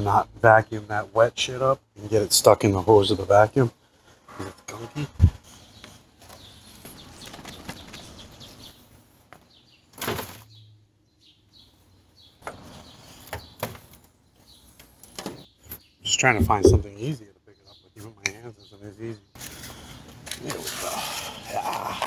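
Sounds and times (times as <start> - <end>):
sharp thump: 16.4 - 16.9.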